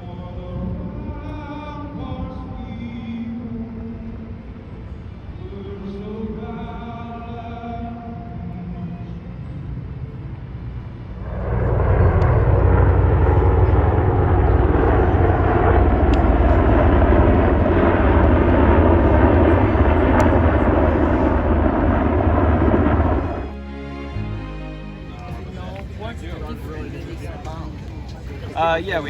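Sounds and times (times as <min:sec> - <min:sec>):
aircraft engine rumble: 0:08.3 - 0:23.6, 0:25.1 - 0:29.0.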